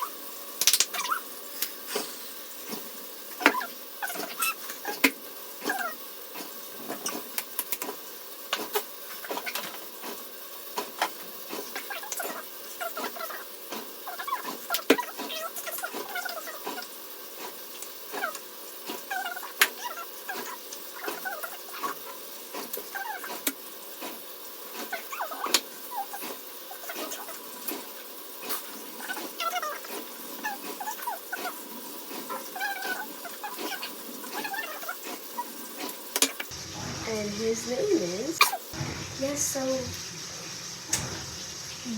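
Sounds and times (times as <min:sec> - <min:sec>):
small animal squeaking and chirping: 0:00.9 - 0:01.3, 0:03.4 - 0:05.0, 0:11.9 - 0:16.9, 0:29.0 - 0:31.6, 0:32.2 - 0:35.6.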